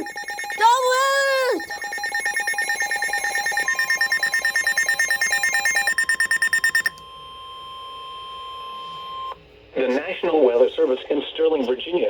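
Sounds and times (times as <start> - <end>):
rapid pulsing alert tone: 0.0 - 6.9
steady alarm tone: 0.0 - 9.4.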